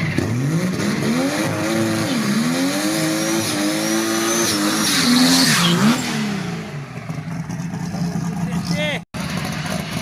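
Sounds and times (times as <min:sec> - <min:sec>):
car engine at high revs: 0:00.0 - 0:10.0.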